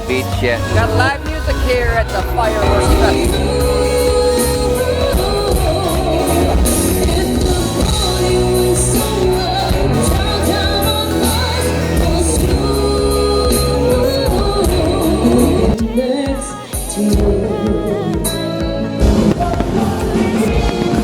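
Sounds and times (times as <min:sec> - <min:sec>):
heavy bass line: 0:00.0 - 0:15.8
person singing: 0:00.0 - 0:21.0
pop-rock band playing: 0:00.0 - 0:21.0.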